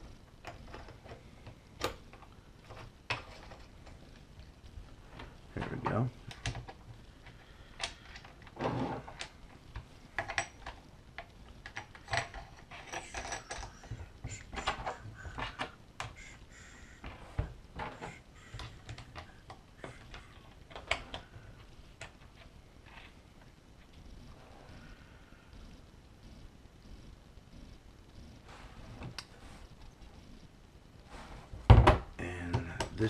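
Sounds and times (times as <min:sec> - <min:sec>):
metal parts clinking and knocking: 0:11.6 - 0:14.0.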